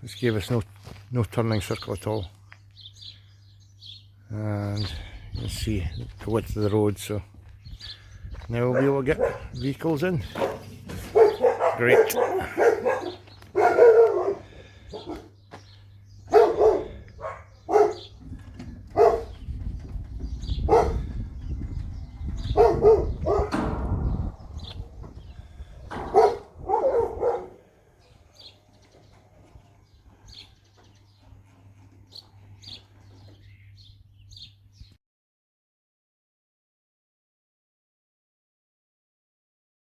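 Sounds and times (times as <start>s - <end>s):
dog barking: 8.7s - 9.6s, 10.3s - 15.3s, 16.3s - 18.2s, 18.9s - 19.4s, 20.6s - 21.1s, 22.4s - 23.7s, 25.9s - 27.7s
low rumble: 18.2s - 27.2s.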